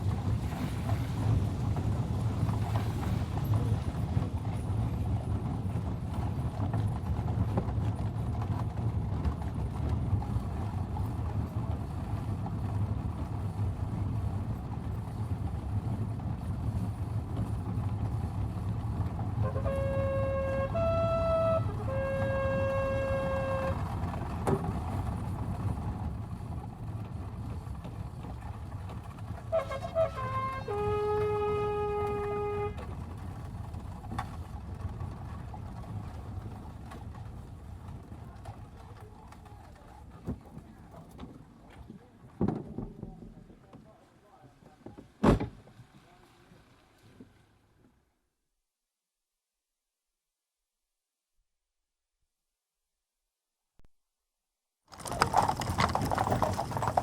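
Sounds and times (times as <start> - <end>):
wheels and hooves rumbling: 0.0 - 48.1, 54.9 - 57.0
horn calls: 19.4 - 24.0, 29.4 - 32.9.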